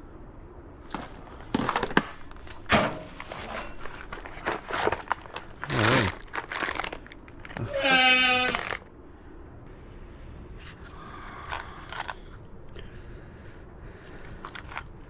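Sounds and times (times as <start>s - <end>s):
scraping rustling noise: 0.9s - 8.9s.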